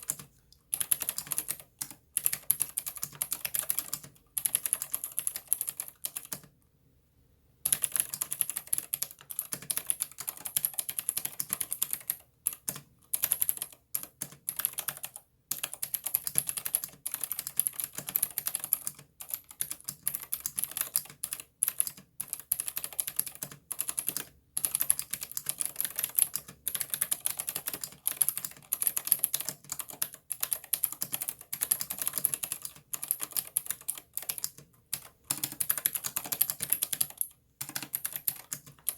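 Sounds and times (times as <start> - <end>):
mechanical keyboard typing: 0.0 - 6.5, 7.6 - 38.9.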